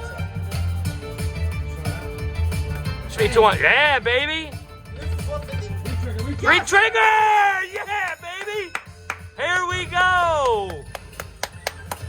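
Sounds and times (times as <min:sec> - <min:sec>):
music with pulsing bass beat: 0:00.0 - 0:12.0.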